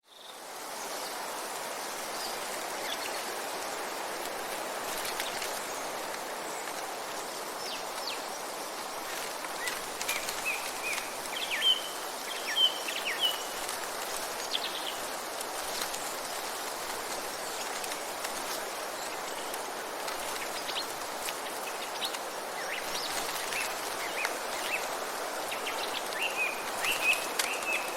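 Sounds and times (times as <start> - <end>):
songbirds chirping: 0.0 - 27.9
steady outdoor hiss: 0.0 - 27.9.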